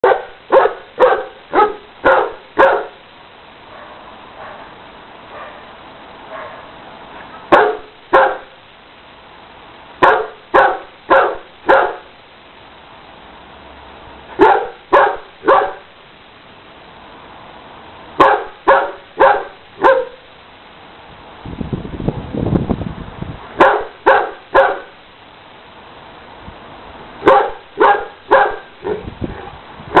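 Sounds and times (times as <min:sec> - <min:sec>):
dog barking: 0:00.0 - 0:03.0, 0:03.7 - 0:04.7, 0:05.3 - 0:05.7, 0:06.3 - 0:06.7, 0:07.5 - 0:08.6, 0:10.0 - 0:12.1, 0:14.4 - 0:15.9, 0:18.2 - 0:20.2, 0:23.6 - 0:25.0, 0:27.2 - 0:30.0.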